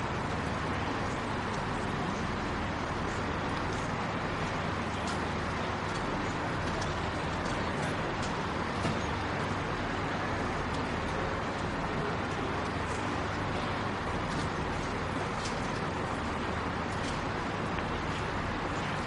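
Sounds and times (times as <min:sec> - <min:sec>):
station rumble and hum: 0:00.0 - 0:19.0.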